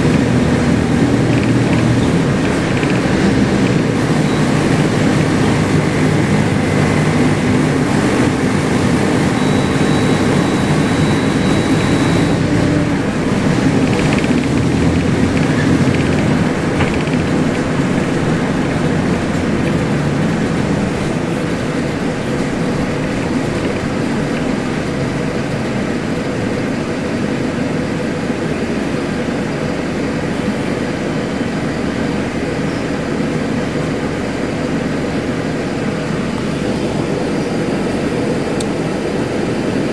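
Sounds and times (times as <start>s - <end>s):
bus diesel engine running: 0.0s - 39.9s.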